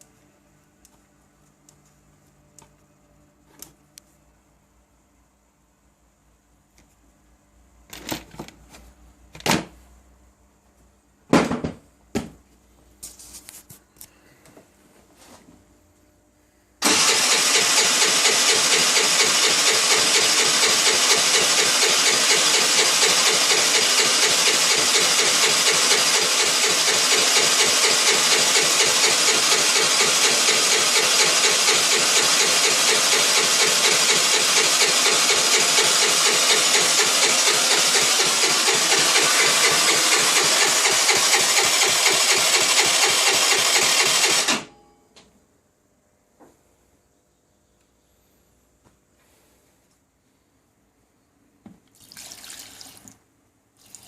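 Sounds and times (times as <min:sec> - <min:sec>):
scooter engine running: 0:16.8 - 0:44.5.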